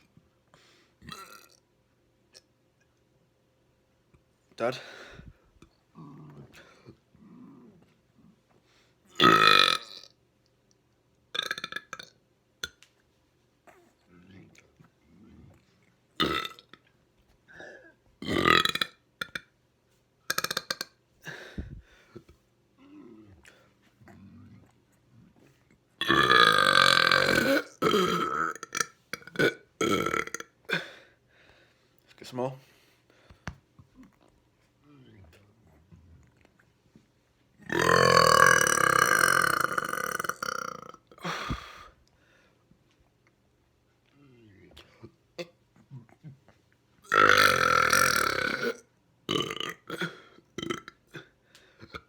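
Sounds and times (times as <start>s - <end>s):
person burping: 1.0s - 1.6s, 9.1s - 10.1s, 11.4s - 12.1s, 16.2s - 16.7s, 17.6s - 19.4s, 20.3s - 21.5s, 26.0s - 31.0s, 37.6s - 41.9s, 47.0s - 52.0s.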